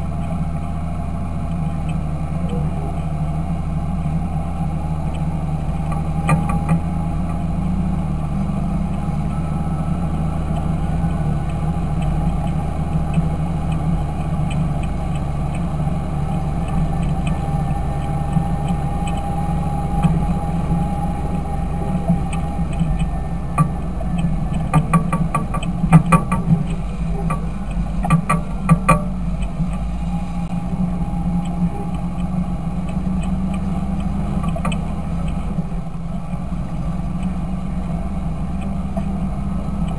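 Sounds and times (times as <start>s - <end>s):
faint engine whine: 0.0s - 39.9s
tractor diesel engine drone: 0.0s - 39.9s.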